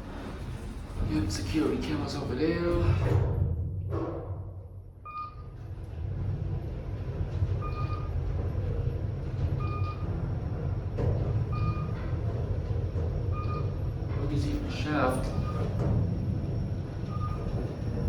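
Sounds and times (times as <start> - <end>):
elevator car rumbling: 0.0 - 18.0.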